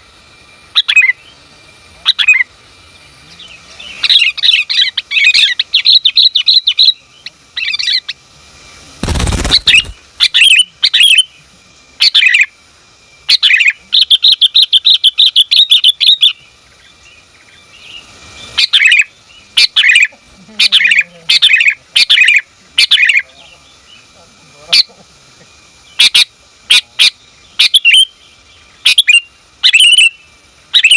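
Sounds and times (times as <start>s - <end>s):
bird chirping calls: 2.0s - 8.2s, 9.0s - 12.6s, 13.3s - 24.2s, 25.8s - 30.9s
loud burst of noise: 8.4s - 10.5s.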